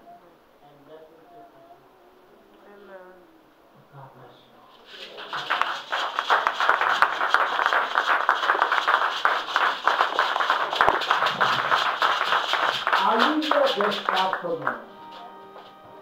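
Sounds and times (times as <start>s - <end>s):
crowd clapping: 4.8s - 15.7s.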